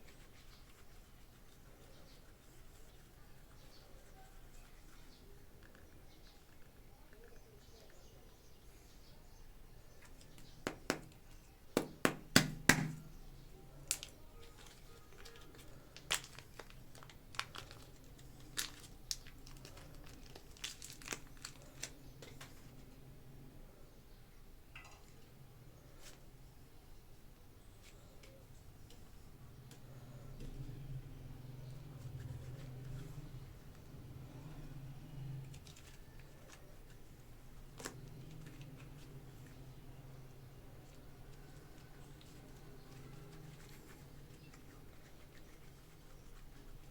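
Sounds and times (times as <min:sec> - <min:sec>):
plastic packaging crinkling and tearing: 0:13.8 - 0:22.8.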